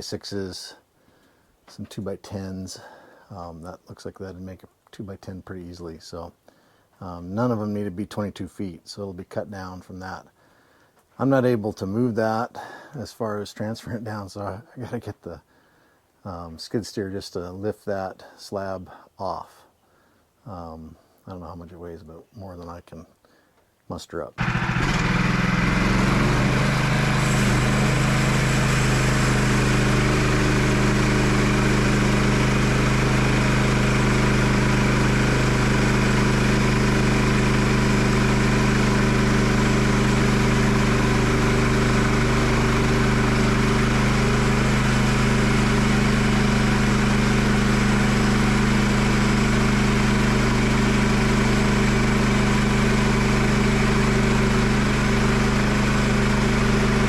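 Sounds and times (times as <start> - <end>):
skid steer engine running: 24.4 - 57.0.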